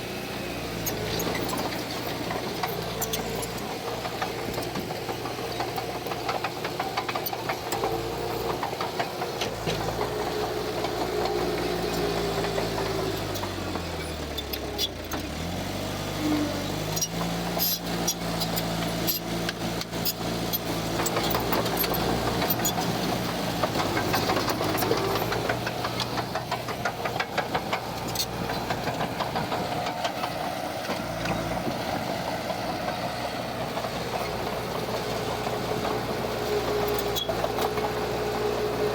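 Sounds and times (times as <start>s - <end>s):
heavy diesel engine running: 0.0s - 38.9s
metal clanks and rattles: 17.0s - 38.0s.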